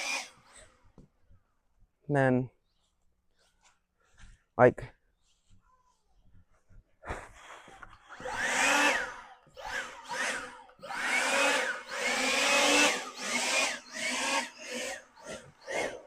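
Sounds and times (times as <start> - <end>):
leaf blower bursts: 0.0 - 0.7, 7.4 - 16.0.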